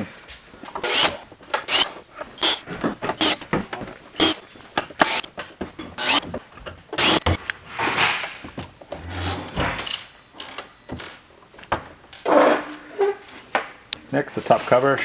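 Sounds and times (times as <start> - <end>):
drill removing screws: 0.8 - 7.4.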